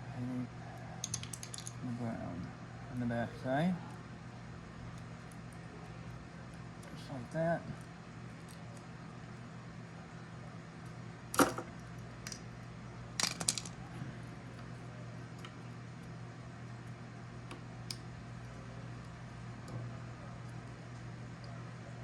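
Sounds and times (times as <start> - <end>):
clicks and knocks of small parts: 1.0 - 1.8, 11.4 - 12.5, 13.2 - 13.8.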